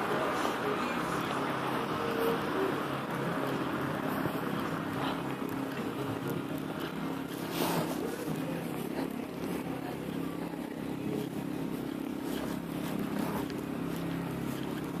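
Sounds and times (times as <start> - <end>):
engine humming: 0.0 - 15.0.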